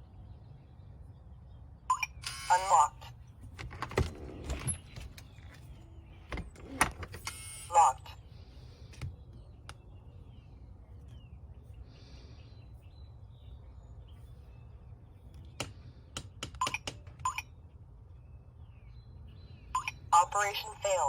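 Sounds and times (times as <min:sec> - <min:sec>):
low steady background hum: 0:00.0 - 0:21.0
keypad beeping: 0:16.6 - 0:17.5.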